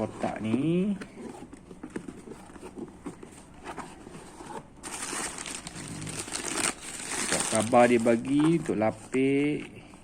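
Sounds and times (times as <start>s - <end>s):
packing rustling and crinkling: 0.3s - 9.6s.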